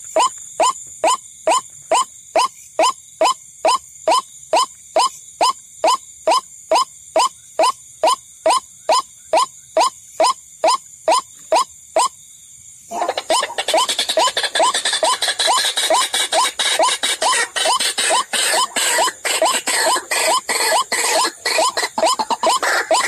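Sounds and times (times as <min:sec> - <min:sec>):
bird call rising notes: 0:13.2 - 0:23.0.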